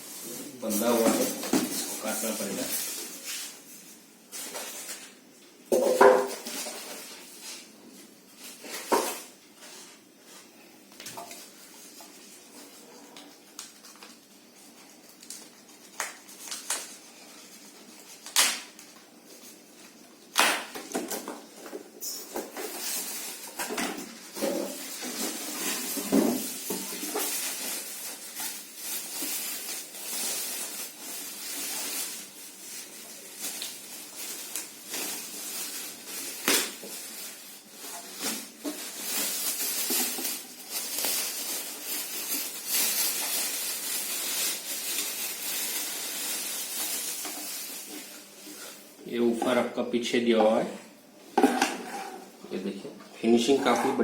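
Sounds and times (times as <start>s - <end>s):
packaging rustling: 24.2s - 48.8s.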